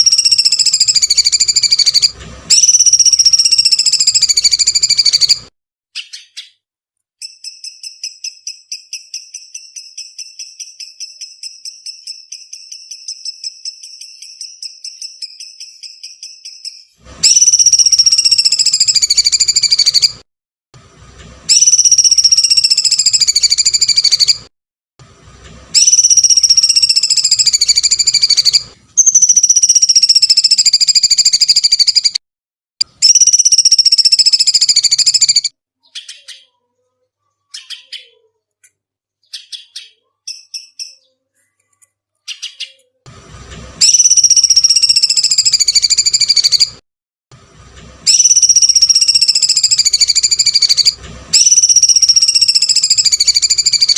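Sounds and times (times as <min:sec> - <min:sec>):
short bird chirps: 0:00.0 - 0:06.6, 0:07.2 - 0:20.2, 0:25.8 - 0:32.2, 0:32.8 - 0:43.0, 0:43.8 - 0:46.8
shrill screeching bird calls: 0:00.0 - 0:06.6, 0:07.2 - 0:20.2, 0:21.5 - 0:24.5, 0:25.8 - 0:32.2, 0:33.0 - 0:36.6, 0:37.4 - 0:38.3, 0:39.2 - 0:41.2, 0:42.3 - 0:42.9, 0:43.8 - 0:46.8, 0:48.1 - 0:53.9.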